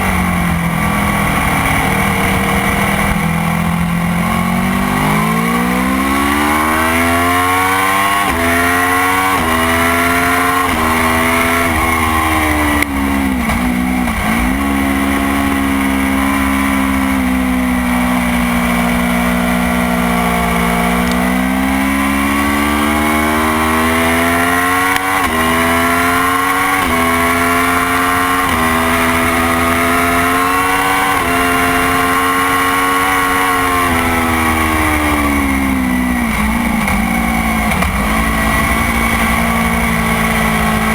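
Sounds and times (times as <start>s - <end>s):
motorcycle engine at high revs: 0.0s - 40.9s.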